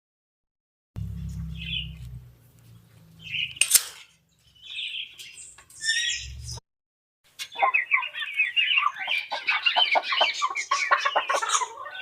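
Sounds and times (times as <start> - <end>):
low rumble: 1.0 - 3.5
sharp crack: 3.5 - 4.1
chickens clucking: 7.3 - 12.0.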